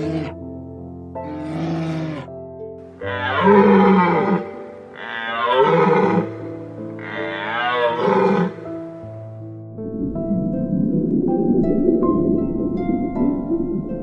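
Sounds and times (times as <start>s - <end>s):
lion roaring: 0.0s - 0.4s, 1.2s - 2.3s, 3.0s - 8.8s
soft background music: 0.0s - 14.0s.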